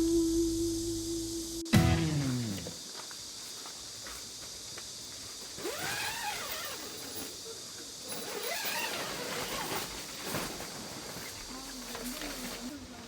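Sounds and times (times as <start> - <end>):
high-pitched insect drone: 0.0 - 9.9.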